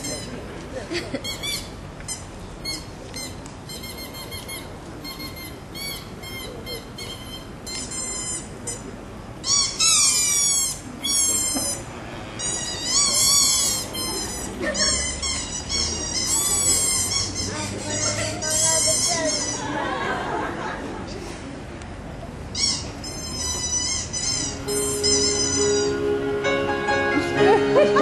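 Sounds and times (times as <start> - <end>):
sweeping bird calls: 22.8 - 26.1.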